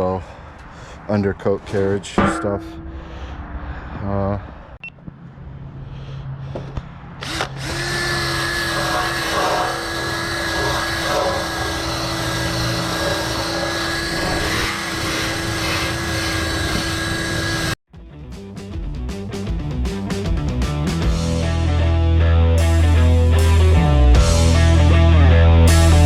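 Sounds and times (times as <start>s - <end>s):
power tool grinding rust off steel: 7.2s - 17.8s.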